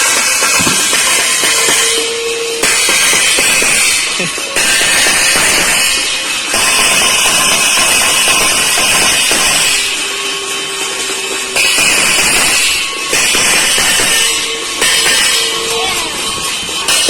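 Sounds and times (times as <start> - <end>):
bells ringing: 0.0 - 17.0
steel plates being beaten: 0.0 - 17.0.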